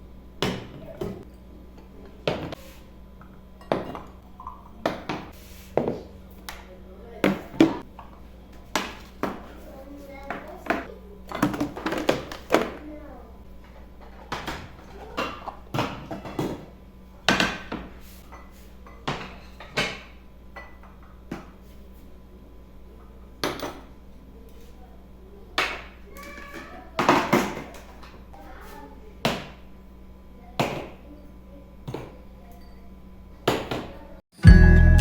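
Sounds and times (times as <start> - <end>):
dishes and utensils clinking: 3.2 - 6.0, 17.3 - 21.2.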